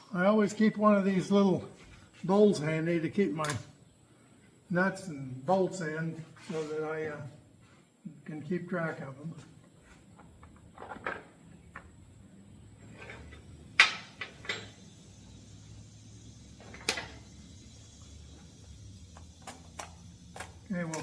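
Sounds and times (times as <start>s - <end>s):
hand tools clicking and knocking: 19.1s - 21.0s.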